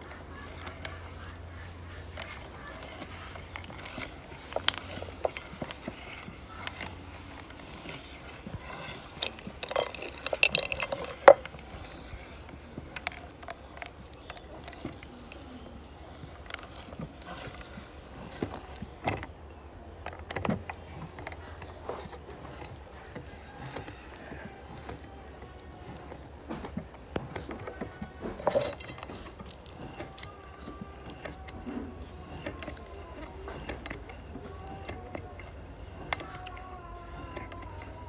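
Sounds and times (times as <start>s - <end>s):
meat grinder crunching candy: 0.0s - 19.4s, 20.1s - 38.0s.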